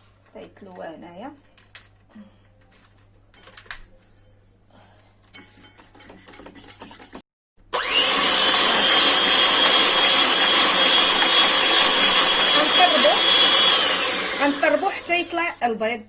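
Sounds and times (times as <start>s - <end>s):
electric hand mixer whining: 7.7s - 15.7s.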